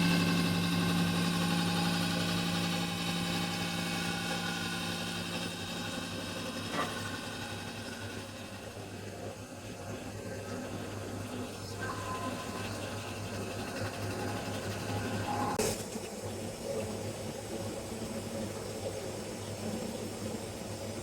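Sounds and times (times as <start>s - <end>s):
motor humming: 0.0s - 15.6s.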